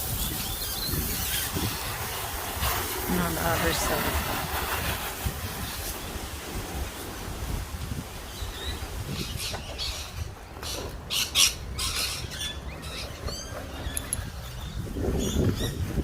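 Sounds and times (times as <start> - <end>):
short hissing bursts: 0.0 - 7.6
wind rumble on microphone: 0.0 - 16.0
birds chirping: 8.2 - 16.0.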